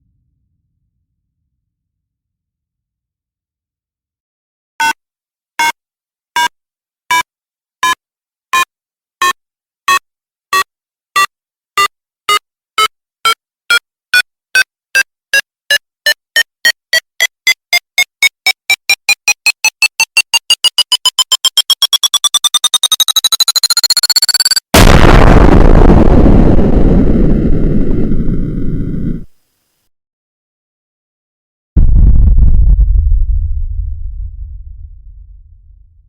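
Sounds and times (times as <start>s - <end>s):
electronic countdown beeps: 7.1s - 8.0s, 8.6s - 24.7s.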